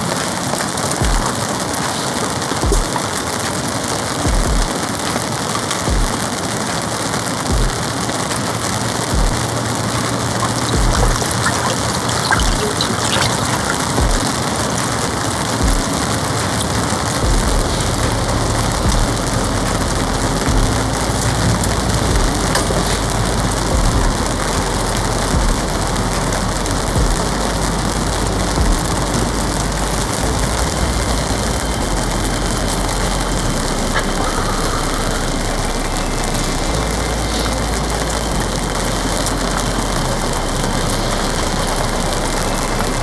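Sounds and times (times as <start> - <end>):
heavy rain on a tarp: 0.0 - 43.0
low thuds: 10.4 - 14.4, 17.2 - 36.9.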